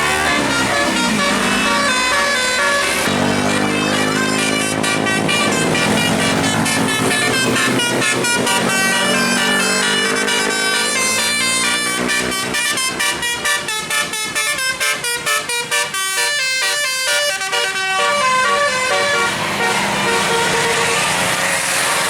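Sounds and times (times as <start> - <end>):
musical bus air horn melody: 0.0 - 21.6.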